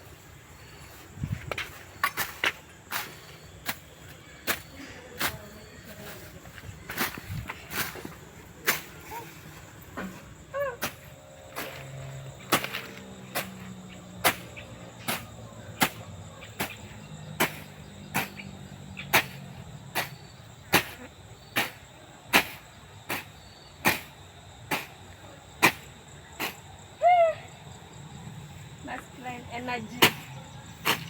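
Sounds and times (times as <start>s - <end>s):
wood being chopped: 12.5s - 13.6s, 14.2s - 16.0s.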